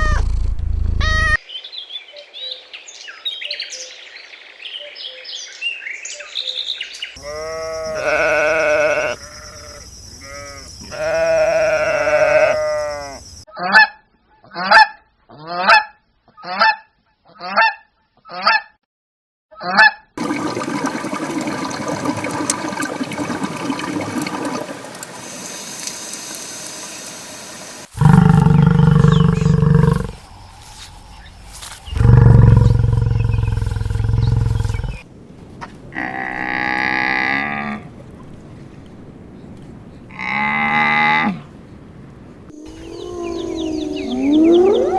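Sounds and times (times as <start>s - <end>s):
deep farm animal calls: 0.0s - 1.4s, 7.2s - 13.2s, 28.0s - 30.9s, 31.5s - 35.0s, 42.6s - 44.9s.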